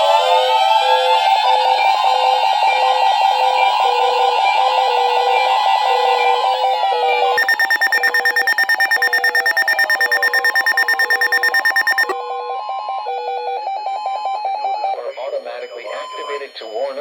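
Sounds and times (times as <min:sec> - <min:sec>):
rapid electronic beeping: 0:07.4 - 0:12.2
repeating lower alarm tones: 0:07.4 - 0:12.2
steady alarm tone: 0:07.4 - 0:12.2.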